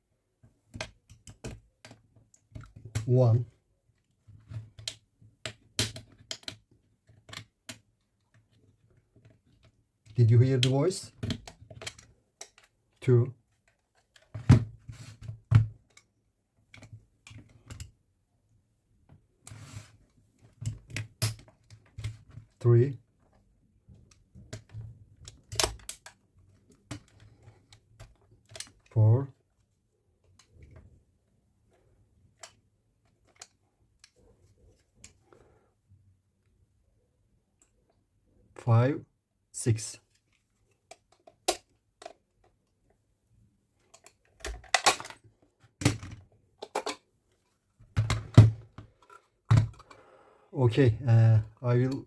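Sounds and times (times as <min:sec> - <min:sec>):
plastic case clicks and clatters: 0:43.9 - 0:47.1, 0:47.9 - 0:50.0.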